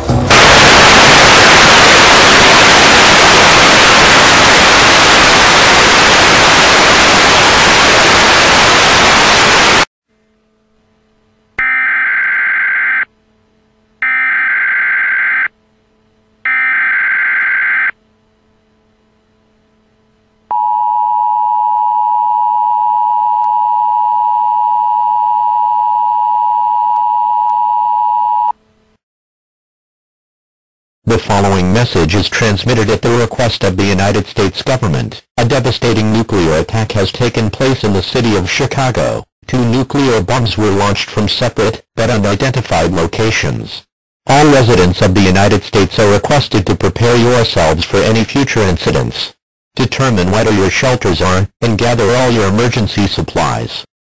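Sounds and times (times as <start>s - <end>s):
loud static hiss: 0.0s - 9.9s.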